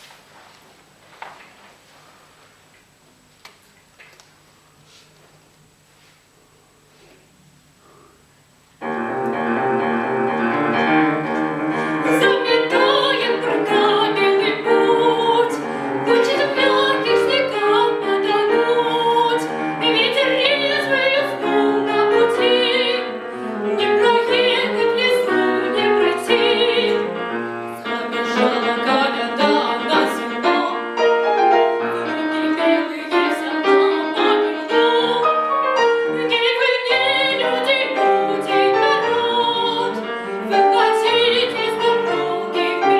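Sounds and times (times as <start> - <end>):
piano accompaniment: 8.8 - 42.9
girl singing classical with vibrato: 10.4 - 42.9.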